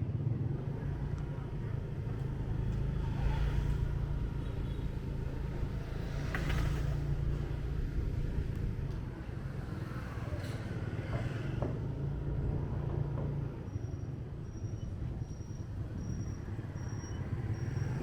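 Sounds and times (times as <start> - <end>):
road and traffic noise: 0.0 - 18.0.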